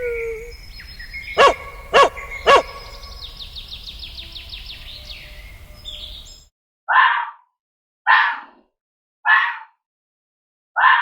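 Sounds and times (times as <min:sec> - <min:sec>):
bird chirping rapidly: 0:00.0 - 0:06.5.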